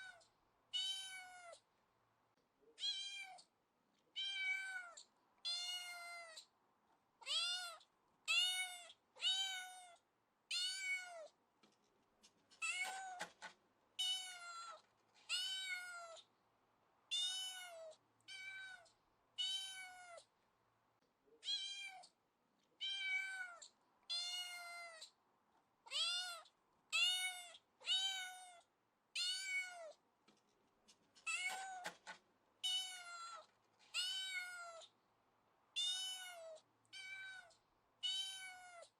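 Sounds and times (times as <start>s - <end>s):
kitten meowing: 0.8s - 1.6s, 2.8s - 3.4s, 4.2s - 6.4s, 7.2s - 11.3s, 14.0s - 16.2s, 17.1s - 20.2s, 22.8s - 25.1s, 25.9s - 28.6s, 29.2s - 30.0s, 32.6s - 34.9s, 35.8s - 38.9s.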